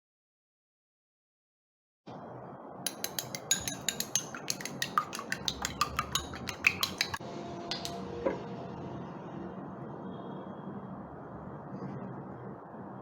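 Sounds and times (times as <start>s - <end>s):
utensil clinking against dish: 2.9s - 8.0s.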